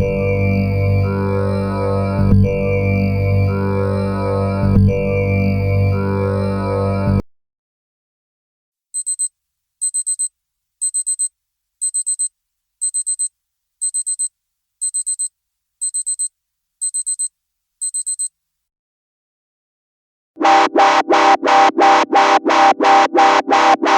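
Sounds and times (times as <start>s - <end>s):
digital alarm beeping: 9.0s - 18.3s.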